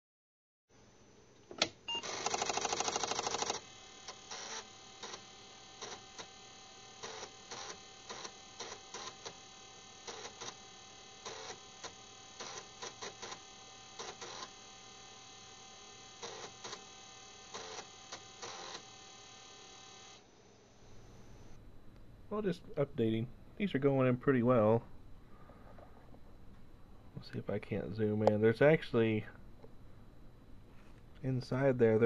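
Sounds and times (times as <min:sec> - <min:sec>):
steady electrical hum: 0:00.7 - 0:32.0
small mechanical clicks: 0:02.2 - 0:05.2.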